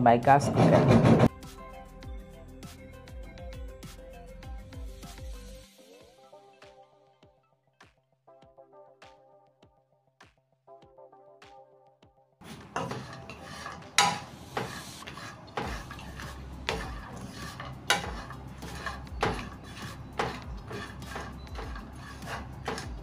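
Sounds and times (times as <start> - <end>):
spoon scraping frying pan: 12.4 - 23.0
spoon clinking against pan: 12.6 - 14.4.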